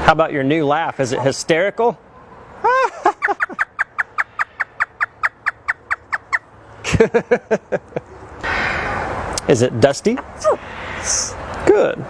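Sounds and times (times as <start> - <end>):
parrot imitating laughter: 2.6 - 6.4.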